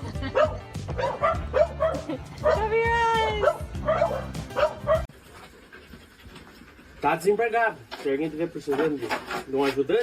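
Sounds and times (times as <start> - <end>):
dog barking: 0.3 - 2.7, 3.4 - 5.1.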